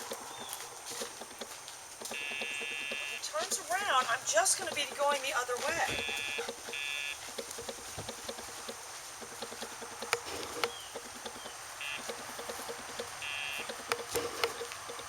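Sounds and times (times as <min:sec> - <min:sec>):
short electronic beeps: 0:02.1 - 0:03.2, 0:05.9 - 0:07.2.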